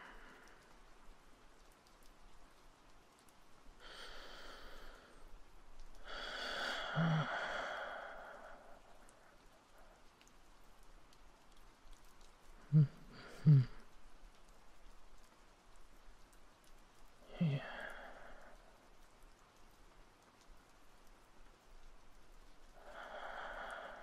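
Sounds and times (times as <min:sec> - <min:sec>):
faint steady rain: 0:00.0 - 0:24.0
man sighing with low hum: 0:06.1 - 0:08.5, 0:12.6 - 0:13.9, 0:17.2 - 0:18.6.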